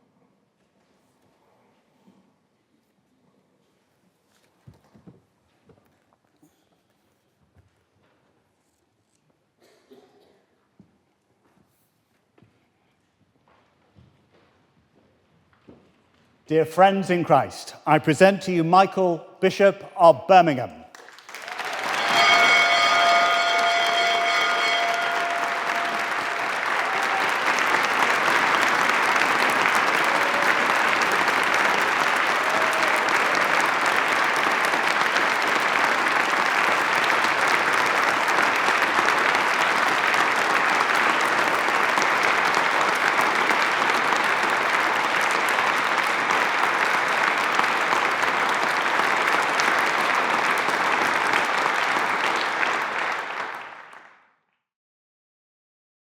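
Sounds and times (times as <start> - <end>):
congregation applauding: 16.5 - 54.2.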